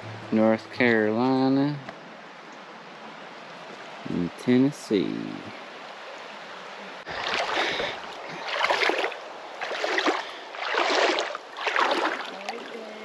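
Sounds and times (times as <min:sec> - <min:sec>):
river rushing: 0:00.0 - 0:13.0
water splashing: 0:05.8 - 0:13.0.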